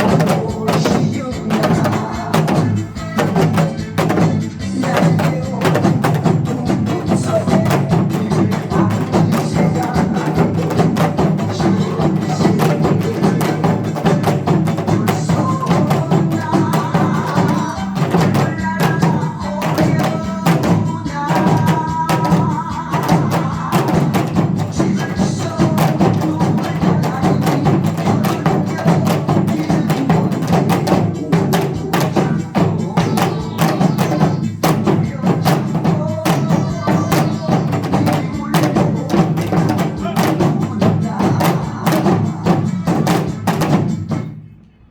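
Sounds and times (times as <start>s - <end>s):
rapid percussion hits: 0.0s - 44.6s.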